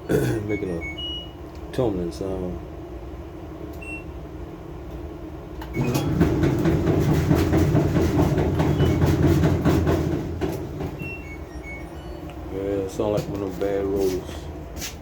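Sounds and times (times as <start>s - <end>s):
dryer drum knocking rumble: 5.7s - 11.5s, 12.8s - 14.4s.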